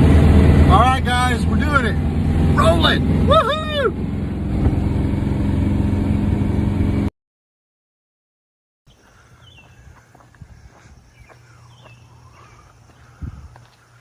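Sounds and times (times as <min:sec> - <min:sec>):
car engine running: 0:00.0 - 0:07.1
faint chirps: 0:08.9 - 0:14.0.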